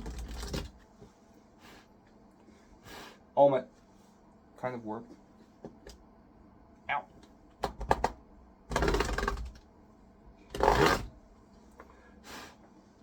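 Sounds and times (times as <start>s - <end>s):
harsh rasping scrapes on keyboard: 0.0s - 0.8s, 8.7s - 9.6s, 10.5s - 11.2s.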